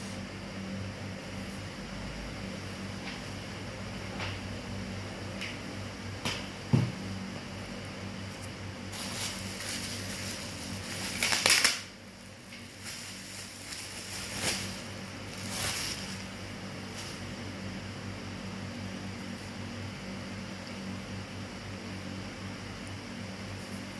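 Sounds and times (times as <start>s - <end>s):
steady low hum: 0.0s - 23.9s
packaging scraping rustle: 8.9s - 17.2s.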